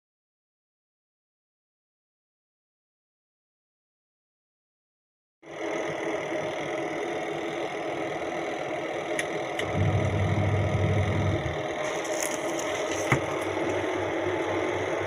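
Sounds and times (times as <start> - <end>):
washing machine motor drone: 5.4 - 15.0
deeper hum: 9.5 - 15.0.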